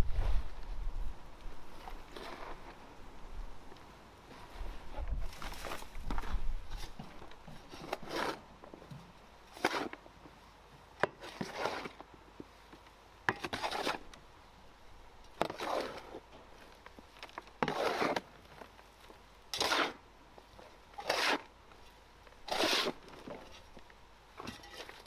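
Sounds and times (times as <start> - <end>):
dry material scraping and rustling: 4.3 - 8.5, 15.4 - 20.0, 20.6 - 23.8.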